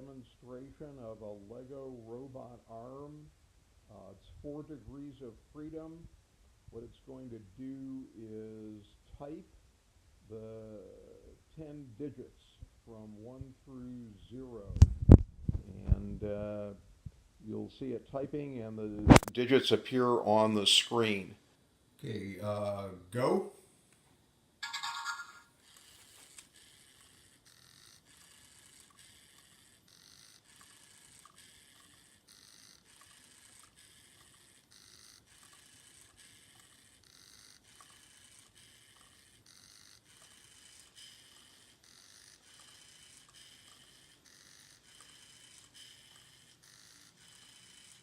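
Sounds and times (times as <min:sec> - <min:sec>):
servo motors whining: 0:25.1 - 0:48.0.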